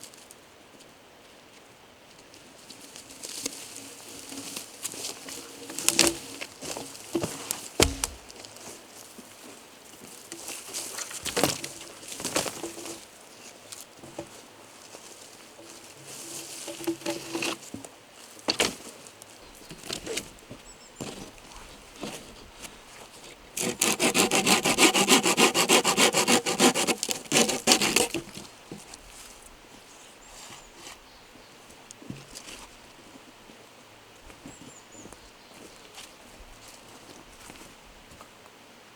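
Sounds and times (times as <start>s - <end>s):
knocks and scrapes: 6.8s - 8.3s, 16.0s - 17.7s, 23.6s - 28.4s
hand saw cutting wood: 7.8s - 8.3s, 23.6s - 28.4s.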